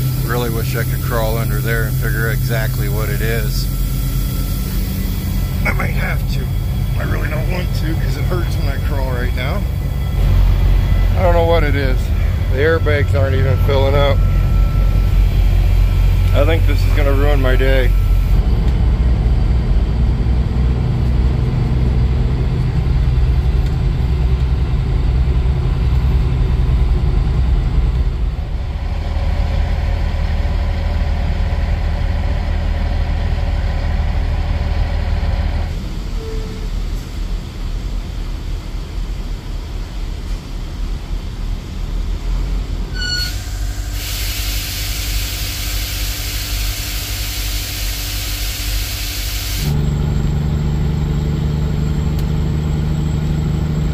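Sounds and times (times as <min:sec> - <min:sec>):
loud steady hiss: 0:00.0 - 0:11.4, 0:43.3 - 0:49.8
truck diesel engine running: 0:00.0 - 0:36.2, 0:45.2 - 0:53.9.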